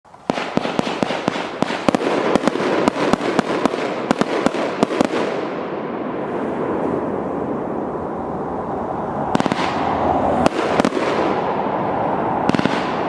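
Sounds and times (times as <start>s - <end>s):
firework cake shots: 0.1s - 5.5s
continuous noisy hiss: 0.1s - 13.0s.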